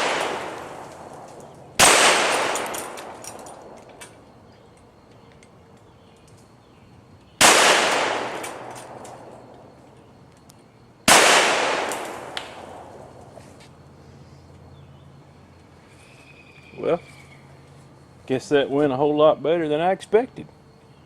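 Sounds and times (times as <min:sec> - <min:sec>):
pistol shots echoing: 0:00.0 - 0:03.8, 0:07.4 - 0:09.5, 0:11.1 - 0:13.1.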